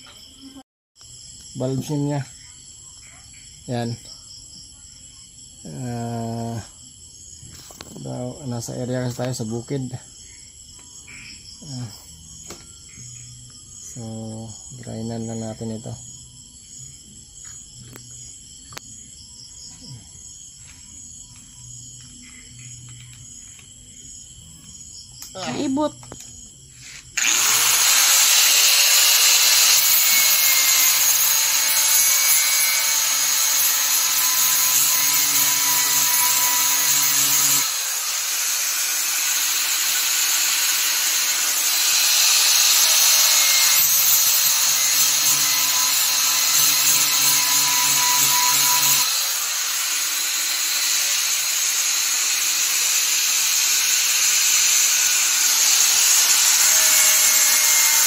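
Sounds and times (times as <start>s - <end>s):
electric grinder grinding: 26.8s - 58.0s.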